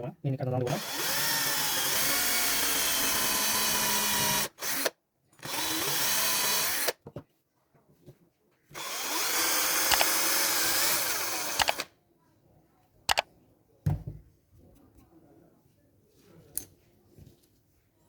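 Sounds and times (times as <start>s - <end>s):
electric hand drill running: 0.8s - 7.0s, 8.8s - 11.9s
small clicks: 9.9s - 10.1s.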